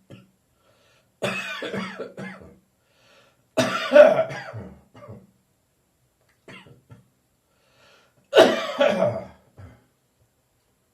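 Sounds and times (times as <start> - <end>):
person coughing: 1.2 - 2.5, 3.6 - 5.2, 8.4 - 9.9.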